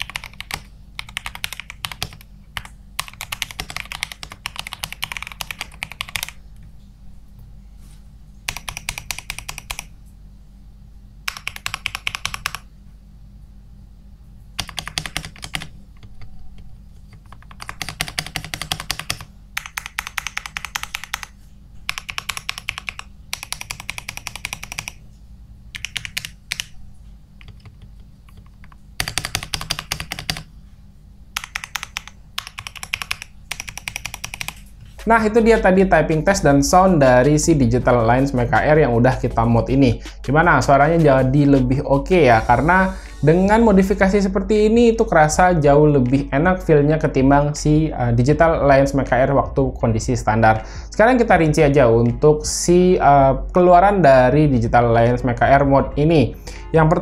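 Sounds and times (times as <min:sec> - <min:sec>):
mechanical keyboard typing: 0:00.0 - 0:06.4, 0:08.5 - 0:09.9, 0:11.3 - 0:12.7, 0:14.6 - 0:25.0, 0:25.7 - 0:26.8, 0:27.4 - 0:30.5, 0:31.4 - 0:34.7.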